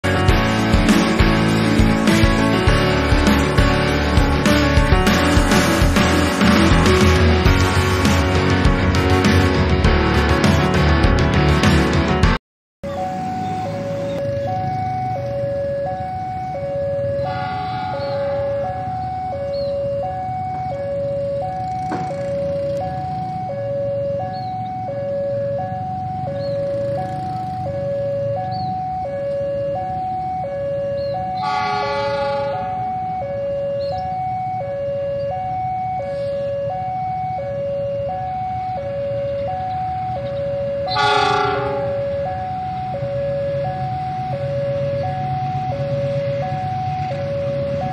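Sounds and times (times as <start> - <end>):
level crossing alarm ding-dong: 15.8 - 26.6, 29.7 - 34.6, 39.5 - 43.0
horn blasts: 17.2 - 19.0, 31.3 - 33.2, 40.8 - 42.4.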